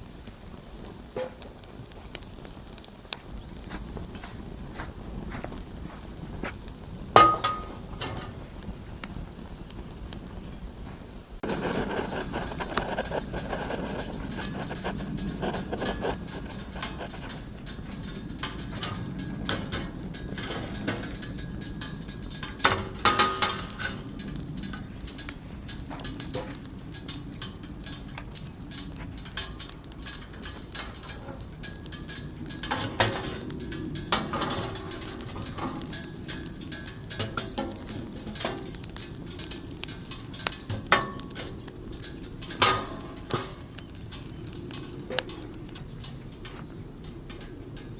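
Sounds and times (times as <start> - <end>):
metal utensils clinking on cookware: 7.2 - 8.4, 12.3 - 47.9.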